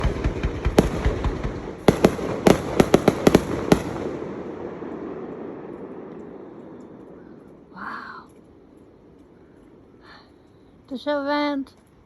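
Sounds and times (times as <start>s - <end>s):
fireworks bursting: 0.0s - 8.0s.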